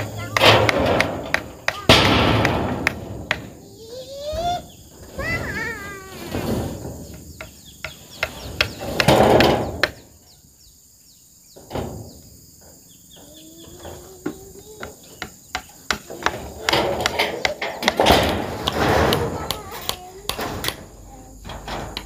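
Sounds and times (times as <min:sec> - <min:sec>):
hammer nailing metal roofing: 0:00.0 - 0:03.6, 0:06.4 - 0:10.0, 0:14.7 - 0:22.0
rustling of roofing sheets: 0:04.5 - 0:07.3, 0:16.0 - 0:19.8.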